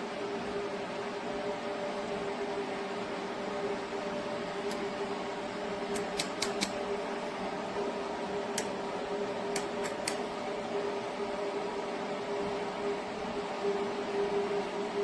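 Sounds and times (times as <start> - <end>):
steady hum: 0.0 - 15.0
metallic clicks of hand tools: 5.9 - 6.7, 9.6 - 10.2.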